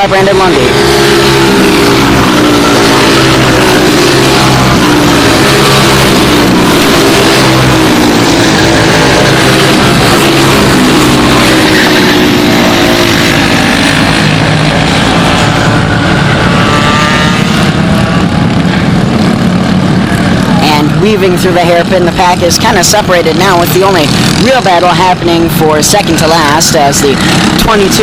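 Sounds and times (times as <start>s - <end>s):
racing go-kart engines: 0.0s - 28.0s.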